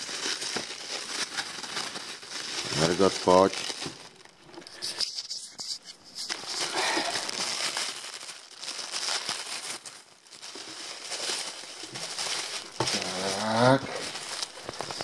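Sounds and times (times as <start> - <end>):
packaging crinkling and rustling: 0.0 - 15.0.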